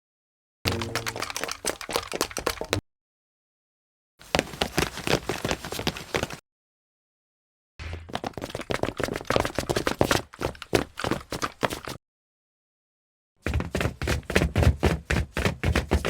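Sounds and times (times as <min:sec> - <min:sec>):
rapid clattering and clicking: 0:00.7 - 0:02.8.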